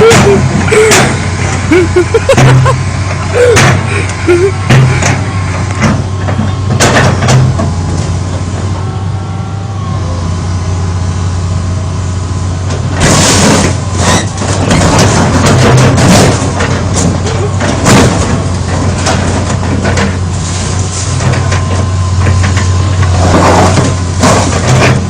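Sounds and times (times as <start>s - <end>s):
excavator diesel engine running: 0.0s - 25.0s
bangs and crunches of car body: 13.0s - 25.0s.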